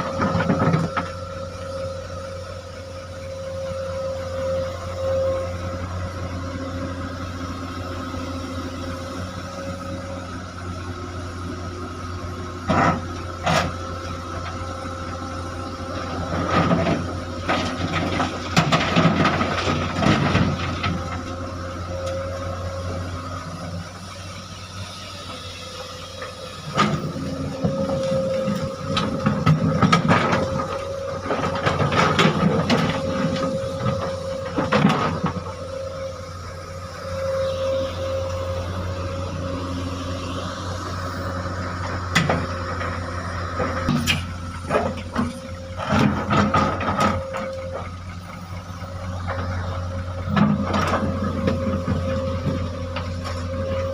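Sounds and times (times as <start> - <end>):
excavator diesel engine running: 0.0 - 53.9
hydraulic whine: 0.0 - 53.9
boulders clattering and grinding: 16.0 - 21.5, 26.8 - 35.6.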